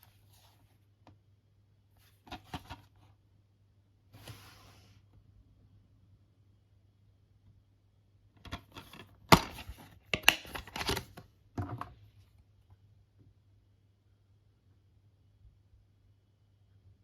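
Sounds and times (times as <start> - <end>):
faint low hum: 0.0 - 17.0
plastic case clicks: 8.5 - 11.9.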